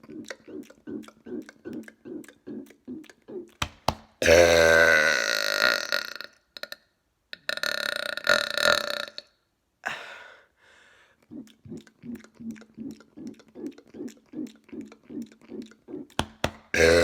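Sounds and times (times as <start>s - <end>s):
man burping loudly: 4.2s - 6.8s, 7.4s - 9.3s, 11.4s - 17.0s.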